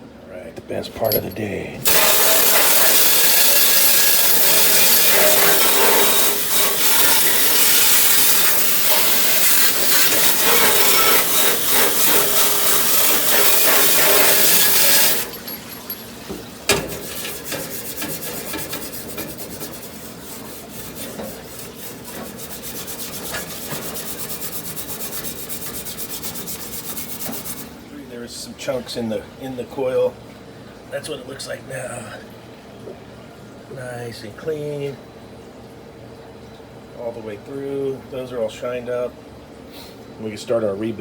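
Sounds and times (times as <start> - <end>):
water spraying with loud hiss: 1.8 - 15.4
rapid rubbing rasp: 1.9 - 15.4, 16.9 - 27.8.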